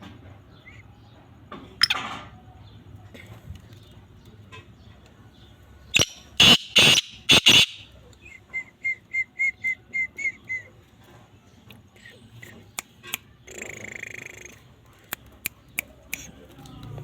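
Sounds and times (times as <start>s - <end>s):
harsh grating bird calls: 1.7s - 2.3s, 5.8s - 10.8s, 11.9s - 16.8s.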